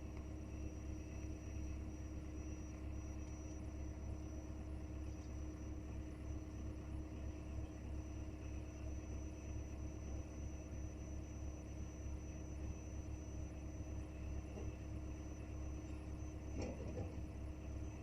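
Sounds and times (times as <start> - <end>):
motor running with whine: 0.0 - 18.0.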